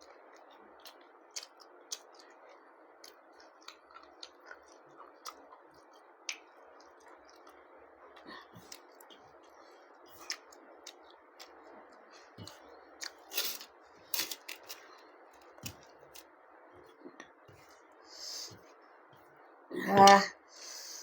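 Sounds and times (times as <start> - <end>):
steady background noise: 0.0 - 21.0
person chewing and eating: 0.1 - 18.7.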